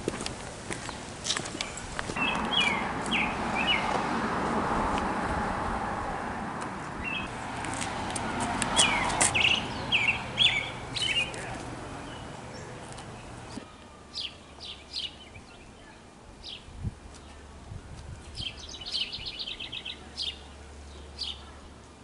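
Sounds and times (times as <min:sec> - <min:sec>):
small birds chirping: 0:00.8 - 0:03.9, 0:07.0 - 0:07.3, 0:08.8 - 0:21.8.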